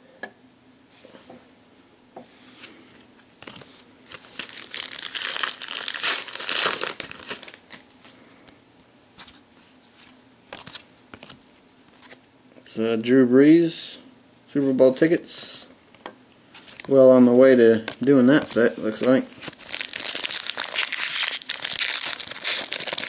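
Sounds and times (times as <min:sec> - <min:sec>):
foil wrapper tearing and crinkling: 0:03.5 - 0:07.8, 0:18.6 - 0:23.0.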